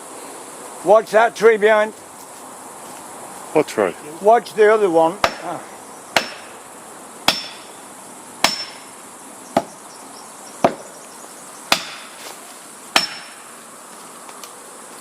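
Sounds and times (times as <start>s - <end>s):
hammer striking metal wedge: 6.2s - 6.5s, 7.3s - 7.7s, 8.4s - 8.8s, 11.7s - 12.1s, 13.0s - 13.4s.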